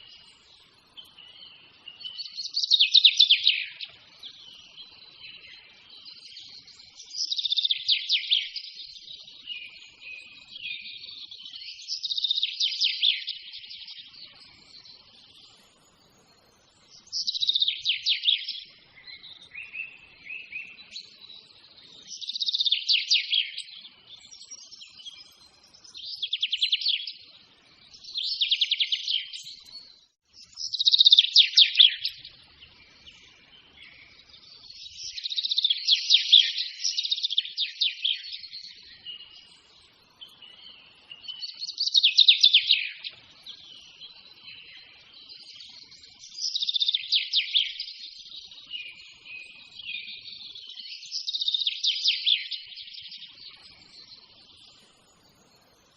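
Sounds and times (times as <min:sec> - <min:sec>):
songbird trilling: 0:17.0 - 0:21.4, 0:30.5 - 0:32.3.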